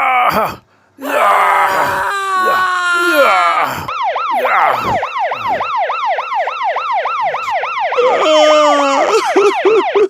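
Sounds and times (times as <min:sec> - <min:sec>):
siren yelping: 0:02.4 - 0:10.0
steady siren tone: 0:03.0 - 0:10.0.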